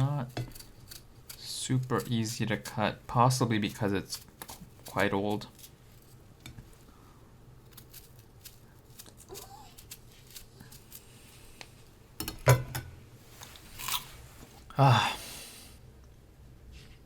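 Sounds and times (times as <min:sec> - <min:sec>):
knife cutting pear: 0:00.0 - 0:06.2, 0:07.6 - 0:11.7.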